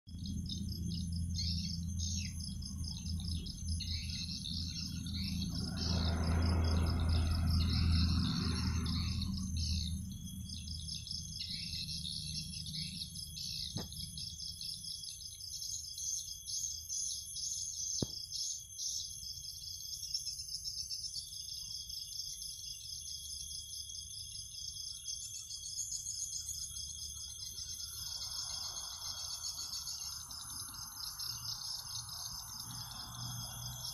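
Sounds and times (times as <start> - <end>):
low hum: 0.1 - 14.7
insects and birds chirping: 0.1 - 33.9.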